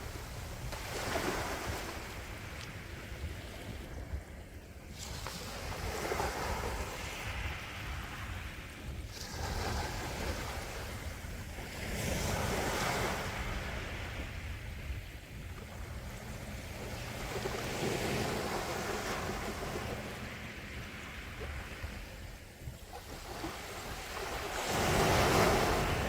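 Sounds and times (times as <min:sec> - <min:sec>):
low rumble of surf: 0:00.0 - 0:26.0
sea waves washing onto shore: 0:00.0 - 0:26.0.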